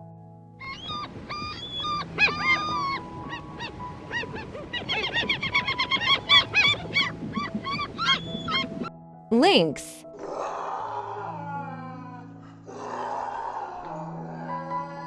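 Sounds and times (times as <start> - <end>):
seagulls calling: 0.6 - 8.9.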